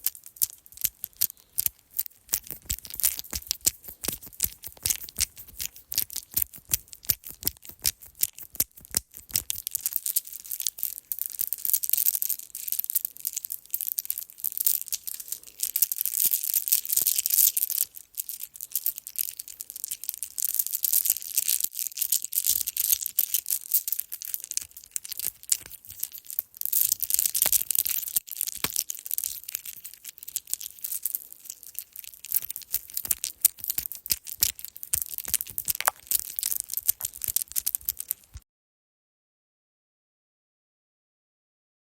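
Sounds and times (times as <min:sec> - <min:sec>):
necklace clinking and jingling: 0:22.4 - 0:38.4.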